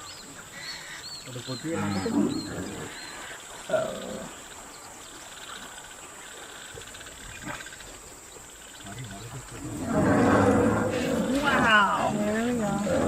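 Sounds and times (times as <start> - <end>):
insects chirring: 0.0 - 13.0.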